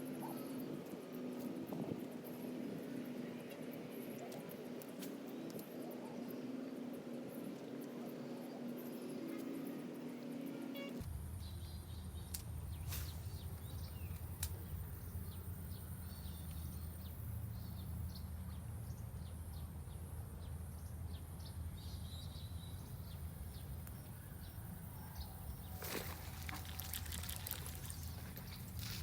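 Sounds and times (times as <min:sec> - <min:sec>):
small birds chirping: 0:00.0 - 0:29.0
steady low rumble: 0:11.0 - 0:25.7.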